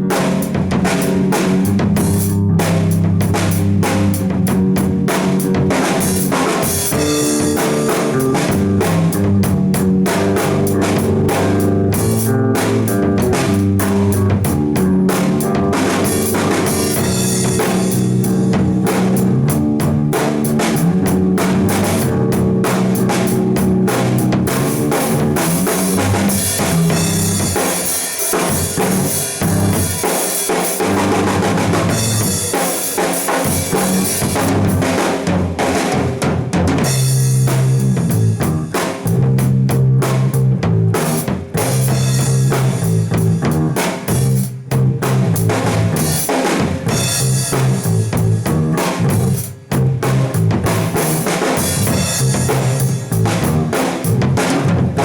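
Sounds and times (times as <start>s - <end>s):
drum kit beat: 0.0s - 55.0s
held notes from pitched instruments: 6.9s - 27.6s.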